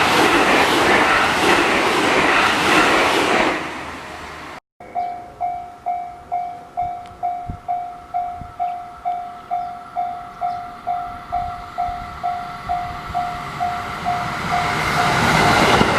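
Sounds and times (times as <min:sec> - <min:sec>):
level crossing warning bell: 0:04.8 - 0:15.8.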